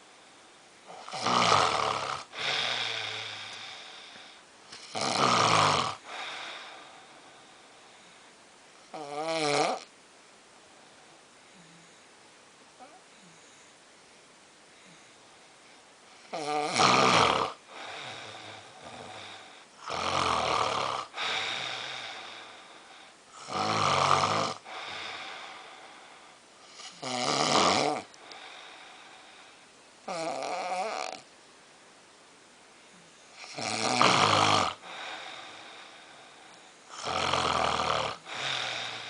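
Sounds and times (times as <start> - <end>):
quiet breath: 0.0 - 1.0, 2.2 - 4.8, 6.0 - 8.9, 10.6 - 16.3, 17.6 - 19.8, 21.0 - 23.4, 24.5 - 27.0, 28.1 - 29.9, 34.8 - 37.0, 38.1 - 39.0
person snoring loudly: 0.9 - 4.1, 4.8 - 6.8, 8.9 - 9.9, 16.3 - 22.7, 23.4 - 25.7, 26.7 - 28.5, 30.1 - 31.2, 33.4 - 35.9, 36.9 - 39.0.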